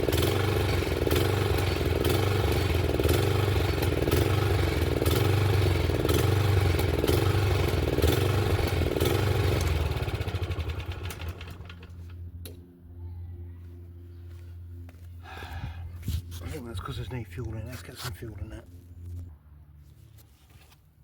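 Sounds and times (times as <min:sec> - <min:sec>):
lawnmower engine running: 0:00.0 - 0:12.7
low hum: 0:09.8 - 0:20.8.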